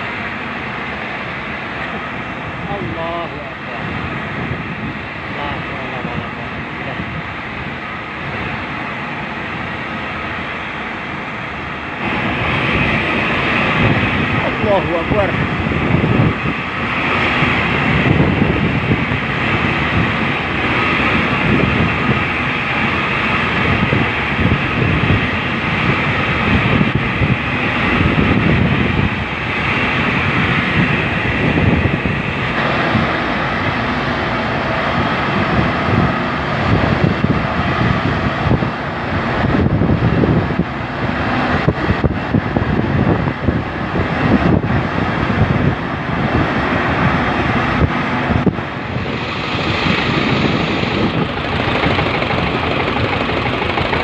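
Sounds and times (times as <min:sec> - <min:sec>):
rushing wash of water: 0:00.0 - 0:54.0
boat engine running: 0:32.4 - 0:39.9, 0:46.7 - 0:54.0.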